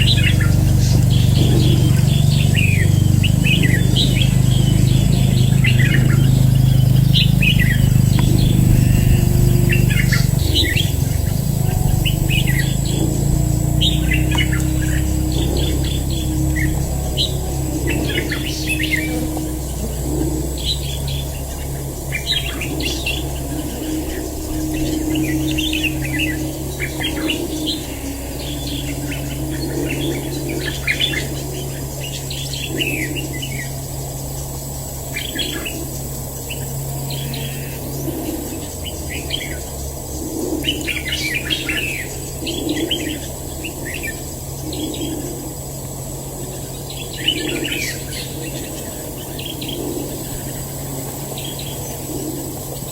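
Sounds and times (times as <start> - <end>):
birds singing and calling: 0.0 - 52.9
steady low hum: 0.0 - 52.9.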